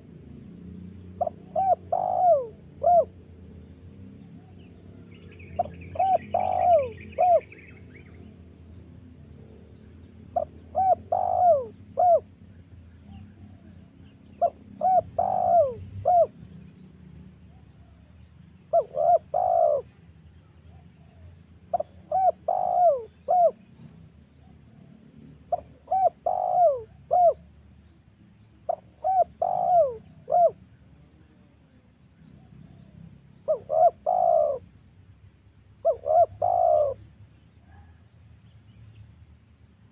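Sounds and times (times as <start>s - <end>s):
small bird chirping: 0.0s - 39.6s
low steady hum: 0.0s - 39.9s
dove cooing: 0.8s - 3.2s, 4.4s - 8.4s, 10.3s - 16.6s, 17.5s - 20.0s, 20.7s - 27.6s, 28.4s - 31.6s, 32.3s - 34.8s, 35.8s - 38.0s.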